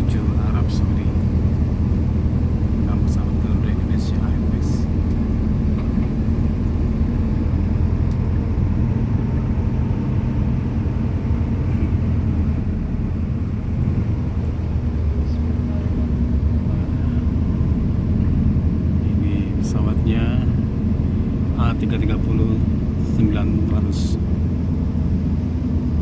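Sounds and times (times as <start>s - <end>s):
low engine rumble: 0.0s - 26.0s.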